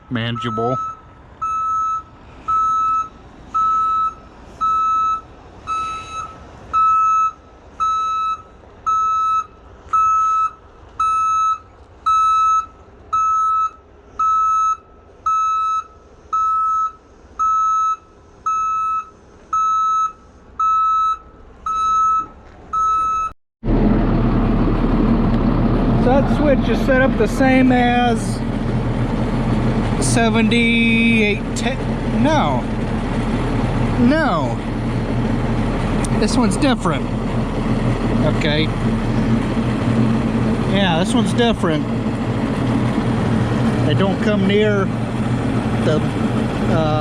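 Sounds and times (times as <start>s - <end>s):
reversing alarm beeping: 0.3s - 23.3s
low engine noise: 21.2s - 47.0s.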